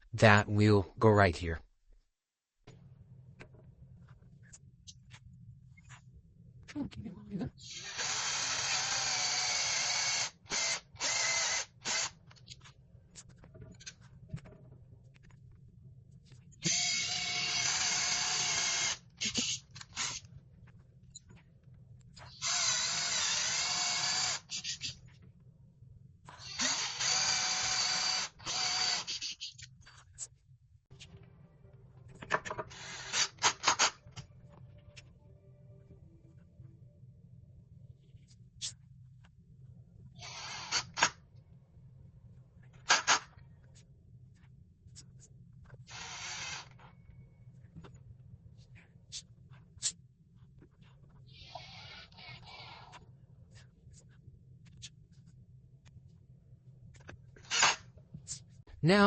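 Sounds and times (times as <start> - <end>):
power drill running: 7.7 - 12.2, 16.7 - 19.0, 22.4 - 24.7, 26.4 - 29.2, 40.2 - 41.1, 45.9 - 46.8.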